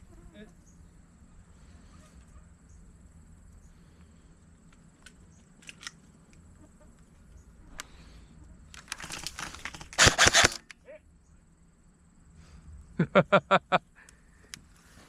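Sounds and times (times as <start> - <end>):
sharp clicks: 4.7 - 6.4, 8.7 - 10.8.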